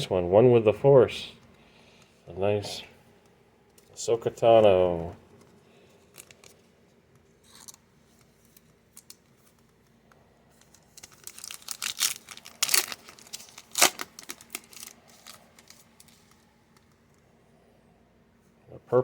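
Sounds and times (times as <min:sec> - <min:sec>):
packaging crinkling and tearing: 0:06.0 - 0:06.6, 0:10.5 - 0:16.4.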